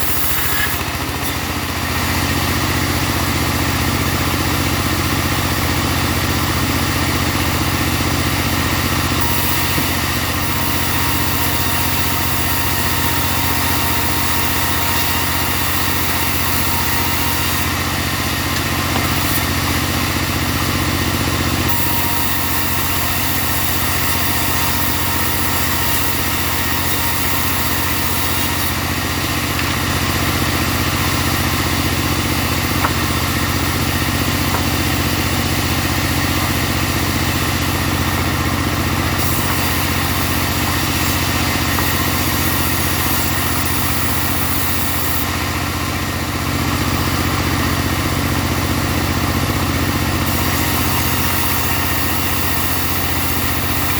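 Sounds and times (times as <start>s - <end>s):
band blade hissing through timber: 0.0s - 1.4s
sawmill engine running: 0.0s - 53.9s.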